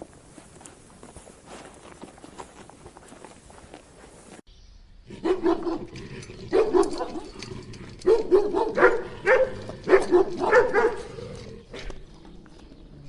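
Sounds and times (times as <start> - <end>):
dog barking: 5.2 - 5.9, 6.5 - 7.4, 8.0 - 11.1.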